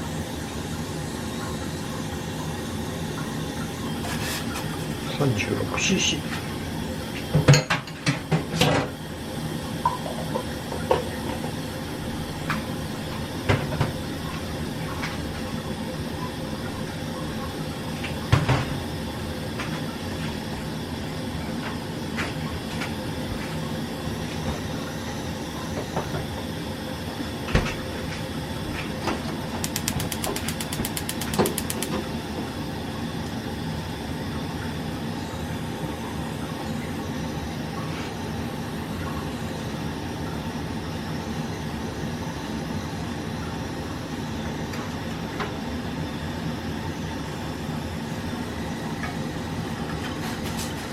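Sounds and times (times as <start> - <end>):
steady hum: 0.0 - 34.4
rapid ticks: 29.6 - 31.9.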